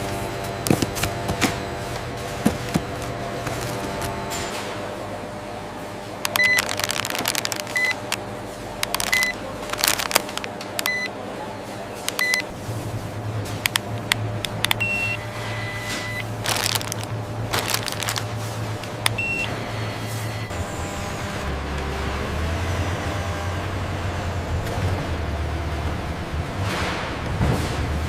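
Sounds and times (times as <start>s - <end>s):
low machine hum: 0.0s - 28.0s
short electronic beeps: 6.3s - 6.7s, 7.7s - 8.0s, 9.0s - 9.4s, 10.8s - 11.1s, 12.2s - 12.4s, 14.7s - 16.2s
sharp clicks and knocks: 8.8s - 11.0s, 13.5s - 14.9s.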